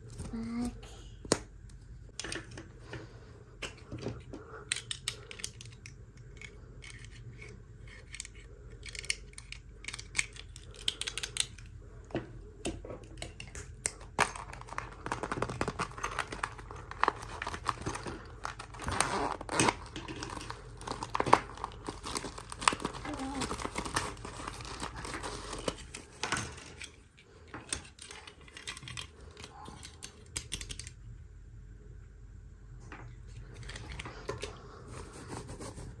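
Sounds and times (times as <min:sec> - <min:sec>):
packaging clicks and taps: 0:07.9 - 0:26.9
plastic and paper crinkling: 0:13.9 - 0:27.0.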